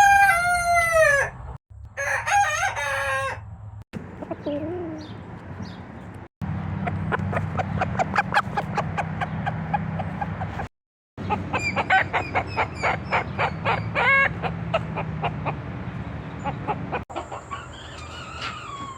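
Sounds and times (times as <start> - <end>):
bird clucking calls: 4.0 - 18.9.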